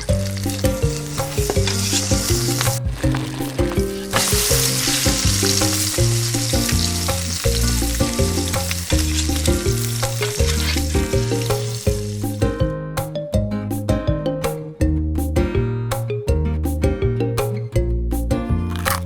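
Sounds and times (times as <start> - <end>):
loud sizzling hiss: 0.0 - 12.4
music with bouncy bass line: 0.0 - 19.0.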